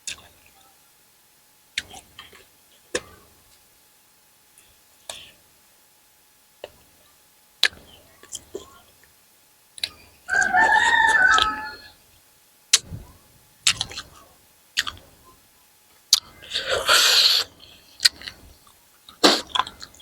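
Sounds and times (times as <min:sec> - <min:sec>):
rooster crowing: 0:10.3 - 0:12.0.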